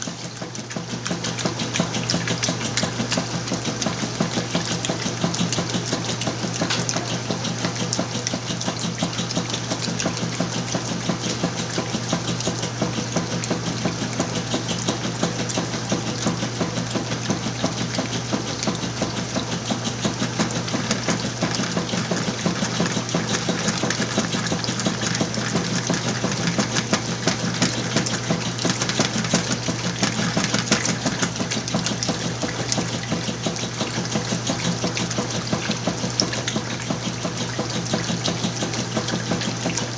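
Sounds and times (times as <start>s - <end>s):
washing machine motor hum: 0.0s - 39.9s
water churning: 0.0s - 39.9s
rapid clicking: 18.2s - 32.9s.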